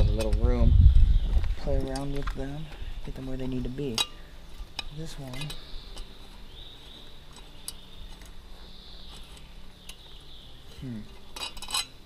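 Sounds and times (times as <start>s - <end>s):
metal tools clicking and tapping: 3.4s - 8.3s, 10.7s - 12.0s.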